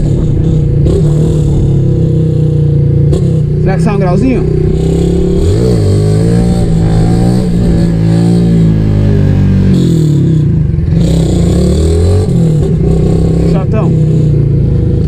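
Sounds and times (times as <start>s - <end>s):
motorcycle accelerating hard: 0.0s - 15.0s.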